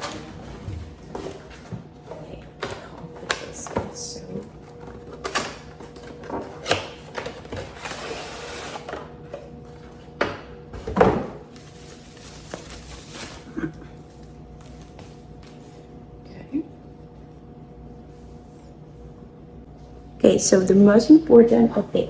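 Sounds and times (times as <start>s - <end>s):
packaging rustling: 11.5s - 13.5s.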